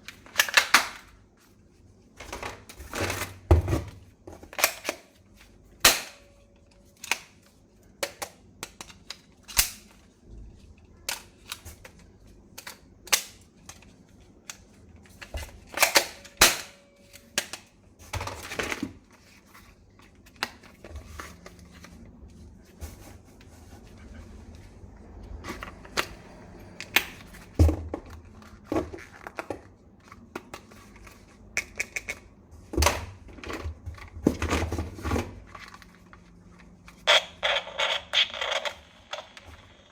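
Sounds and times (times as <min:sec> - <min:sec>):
toy gun plastic clicks: 0:37.1 - 0:39.6.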